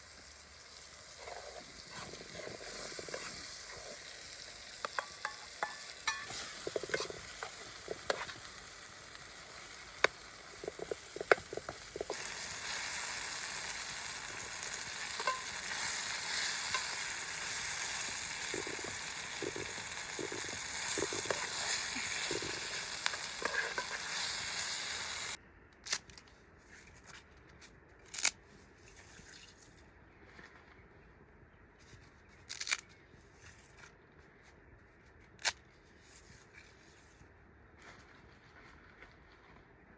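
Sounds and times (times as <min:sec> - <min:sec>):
food sizzling in a pan: 0:00.0 - 0:25.4
utensil clicks and scraping: 0:01.2 - 0:29.8.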